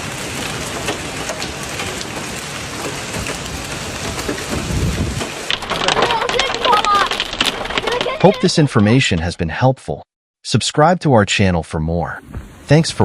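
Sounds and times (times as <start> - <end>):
heavy rain falling: 0.0 - 9.4.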